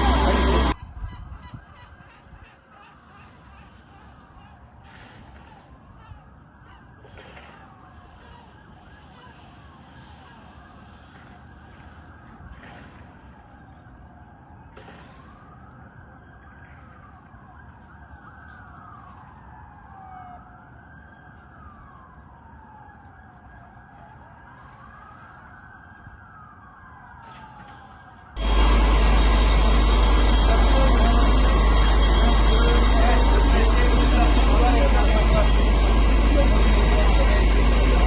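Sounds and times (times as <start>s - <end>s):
loud steady noise: 0.0s - 0.8s, 28.4s - 38.0s
emergency sirens wailing: 0.0s - 38.0s.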